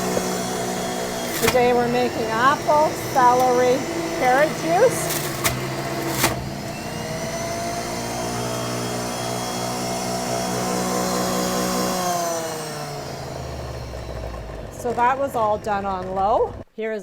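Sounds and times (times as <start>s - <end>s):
juicer switch click: 0.0s - 6.7s
electric juicer motor running: 0.0s - 16.7s.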